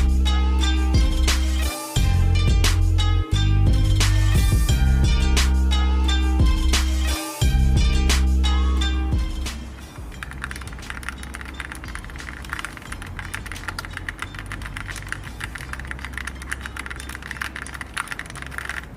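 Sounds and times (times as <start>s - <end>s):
mechanical keyboard typing: 10.2s - 18.9s.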